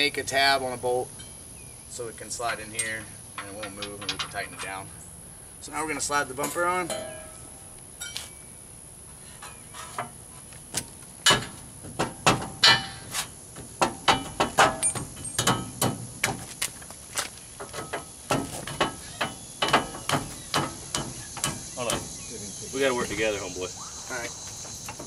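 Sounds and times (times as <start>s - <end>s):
metal knocks and clanks: 2.8s - 4.9s, 9.4s - 16.5s, 17.6s - 22.2s.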